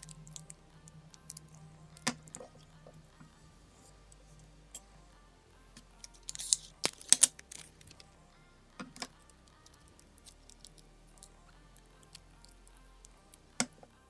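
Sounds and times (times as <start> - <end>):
tape rustling: 6.0 - 8.2.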